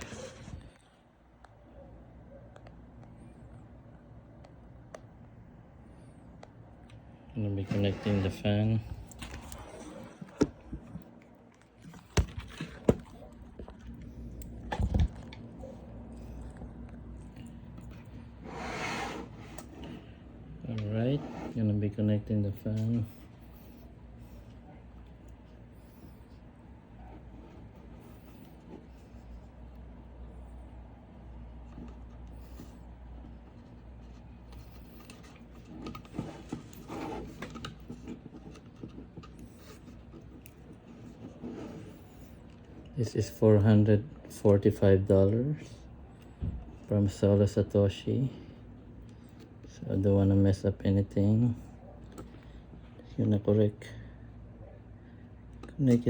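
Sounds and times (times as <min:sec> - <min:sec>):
cable rustling: 0:06.1 - 0:43.4.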